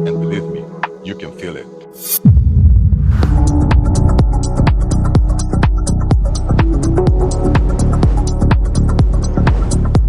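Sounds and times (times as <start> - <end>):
electronic music: 1.8 - 2.2, 3.2 - 10.0
kick drum beat: 2.3 - 10.0
sustained synth notes: 3.4 - 8.0.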